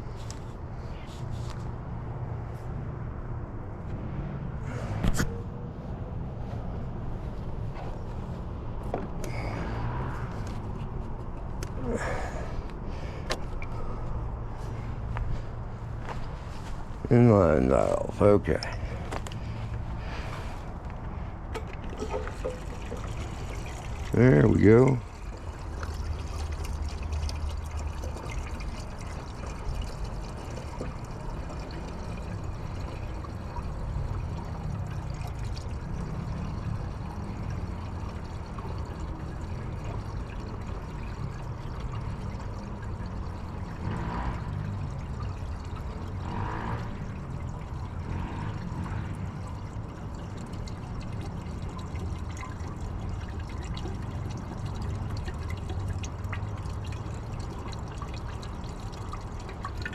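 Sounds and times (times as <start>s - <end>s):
fuel running into tank: 7.1s - 59.9s.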